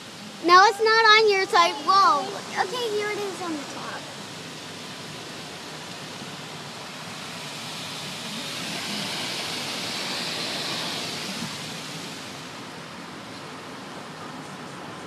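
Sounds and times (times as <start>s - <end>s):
spray hissing on car roof: 1.9s - 13.3s.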